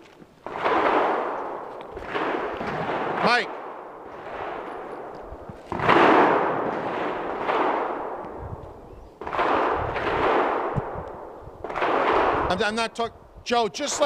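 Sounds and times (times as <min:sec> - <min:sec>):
pistol shots with echo: 0:00.4 - 0:13.0.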